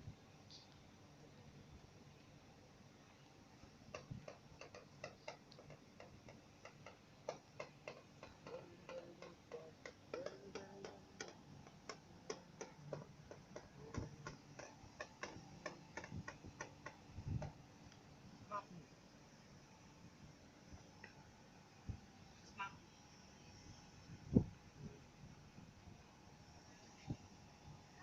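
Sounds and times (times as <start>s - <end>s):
light irregular clicks: 3.6s - 18.1s.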